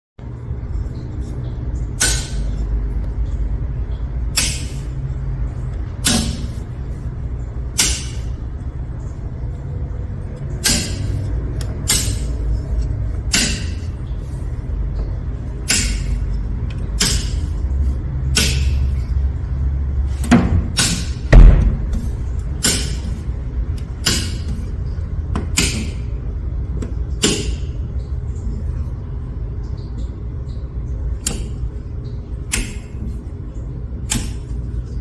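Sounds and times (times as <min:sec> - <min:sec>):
steady low hum: 0:00.2 - 0:35.0
circuit breakers clicking: 0:30.5 - 0:33.2.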